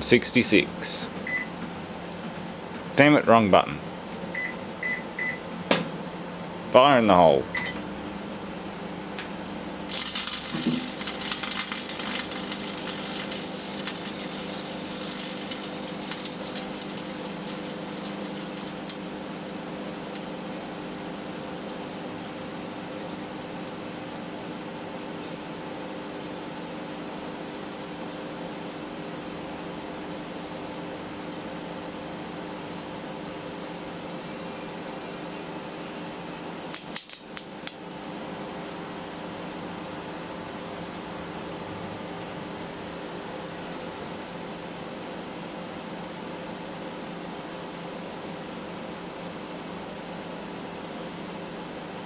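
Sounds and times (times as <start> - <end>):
microwave oven humming: 0.0 - 52.0
electrical arc crackling: 9.8 - 19.4.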